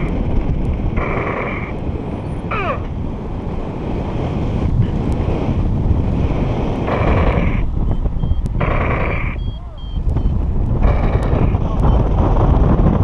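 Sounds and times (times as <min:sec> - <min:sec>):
wind buffeting microphone: 0:00.0 - 0:13.0
steady electronic tone: 0:06.9 - 0:12.1.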